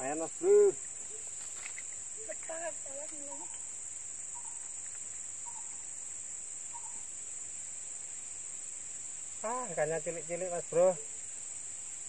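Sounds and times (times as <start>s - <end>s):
faint short calls: 0.0s - 3.7s
high-pitched insect chorus: 0.0s - 12.0s.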